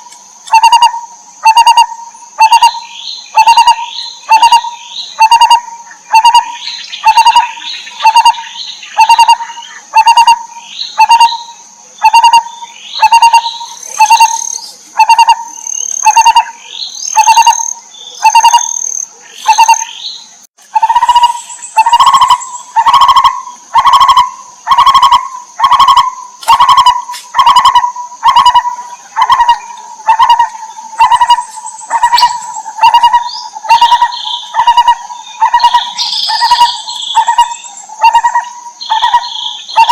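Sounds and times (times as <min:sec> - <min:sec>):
high chirping: 0:00.0 - 0:39.9
high-pitched insect-like whine: 0:00.0 - 0:39.9
barbet calling low note: 0:12.0 - 0:14.4, 0:20.7 - 0:30.4.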